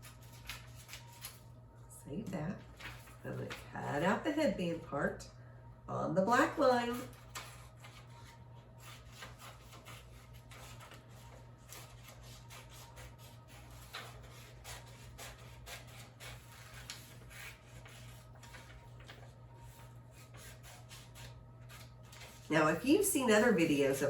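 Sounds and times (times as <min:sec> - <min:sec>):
scissors cutting paper: 0:00.0 - 0:01.4, 0:08.8 - 0:23.0
low steady hum: 0:00.0 - 0:24.0.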